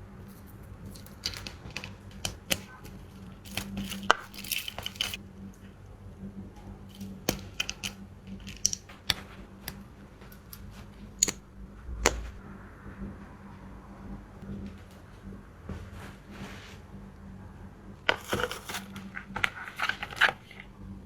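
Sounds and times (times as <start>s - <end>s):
makeup packaging clicks and taps: 1.0s - 5.2s, 7.0s - 10.4s, 11.2s - 11.5s
soft thud: 11.6s - 12.4s.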